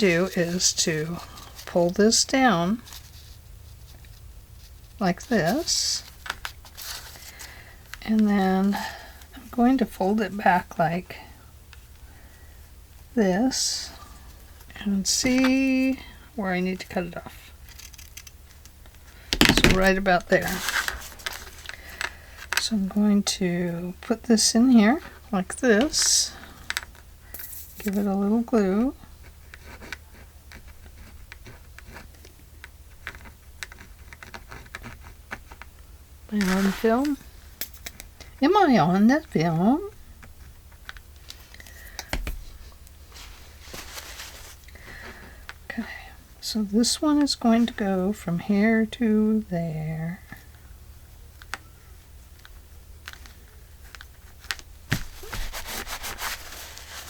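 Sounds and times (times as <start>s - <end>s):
crinkly paper rustling: 0.0s - 1.9s, 2.8s - 7.6s, 17.3s - 22.6s, 36.3s - 37.3s, 43.0s - 45.0s, 53.1s - 57.0s.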